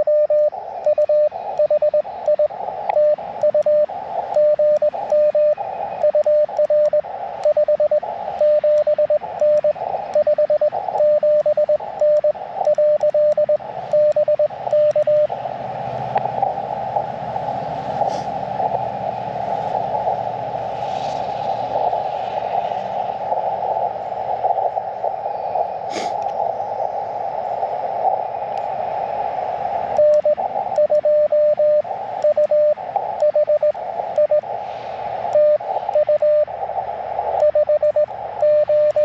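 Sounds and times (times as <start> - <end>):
morse code tone: 0.0 - 15.4, 29.9 - 34.5, 35.3 - 36.6, 37.2 - 39.0
radio band noise hiss: 0.0 - 39.0.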